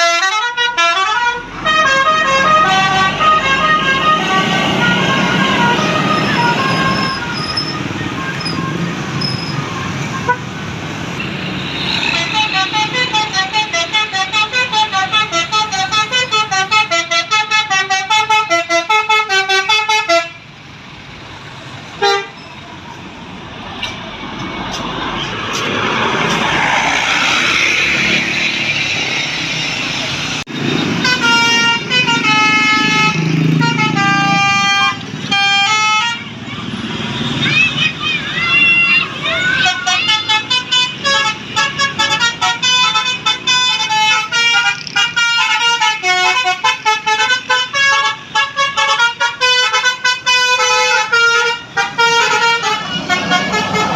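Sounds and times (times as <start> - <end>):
bus musical air horns: 0.0 - 20.5, 22.0 - 22.6, 30.6 - 37.4, 38.0 - 53.9
traffic noise: 0.0 - 53.9
voices: 36.1 - 41.1.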